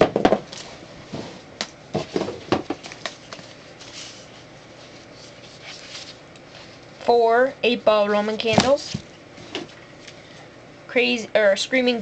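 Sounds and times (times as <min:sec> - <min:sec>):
cardboard and plastic wrap rustling: 0:00.5 - 0:06.8, 0:08.3 - 0:10.1.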